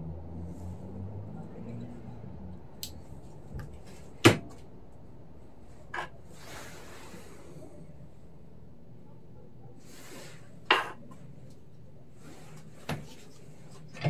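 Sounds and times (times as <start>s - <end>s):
rustle or scrape: 6.0s - 7.6s, 12.2s - 14.0s.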